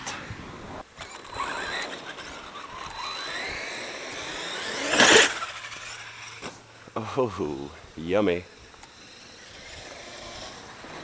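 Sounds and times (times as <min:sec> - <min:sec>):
electric motor whining: 0:01.0 - 0:06.6, 0:08.5 - 0:11.0.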